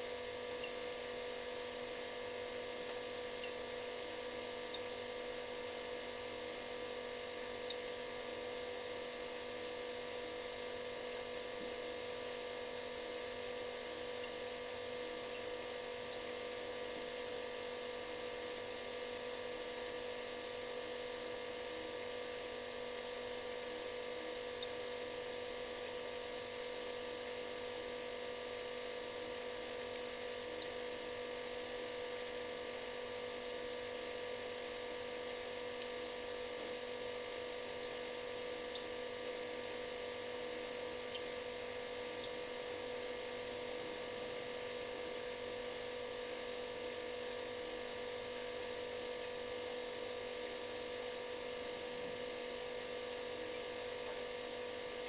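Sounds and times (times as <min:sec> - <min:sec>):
refrigerator humming: 0:00.0 - 0:55.0
faint ticks: 0:00.6 - 0:00.9, 0:02.8 - 0:03.6, 0:04.7 - 0:05.0, 0:07.6 - 0:07.9, 0:14.0 - 0:14.4, 0:16.1 - 0:17.2, 0:21.5 - 0:23.9, 0:35.1 - 0:37.0, 0:37.7 - 0:39.5, 0:42.1 - 0:42.4.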